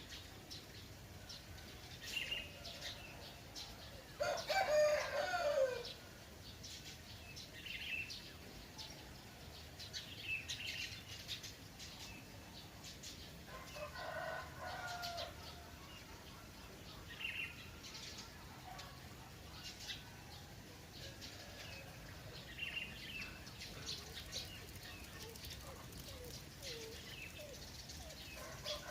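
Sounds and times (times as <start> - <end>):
small birds chirping: 0.0 - 28.9.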